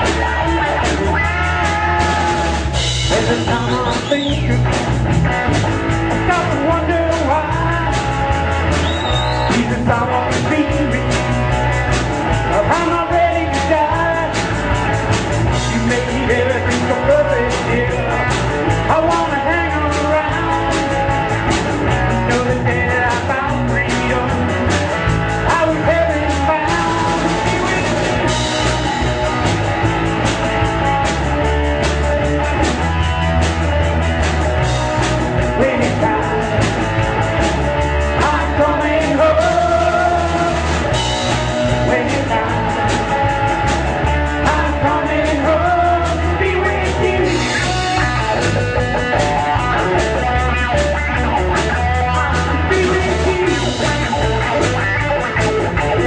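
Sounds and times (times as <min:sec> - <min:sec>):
person singing: 0:00.0 - 0:04.8, 0:06.1 - 0:11.7, 0:12.4 - 0:14.6, 0:15.5 - 0:21.1, 0:22.0 - 0:24.7, 0:25.4 - 0:29.4, 0:34.7 - 0:36.9, 0:37.5 - 0:48.6, 0:49.3 - 0:56.0
bass guitar: 0:00.0 - 0:56.0
electric guitar: 0:00.0 - 0:56.0
steady drum beat: 0:00.0 - 0:56.0.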